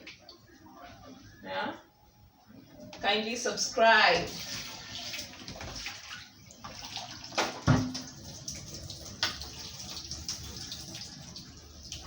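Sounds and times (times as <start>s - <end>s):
tap water running: 4.0s - 12.0s.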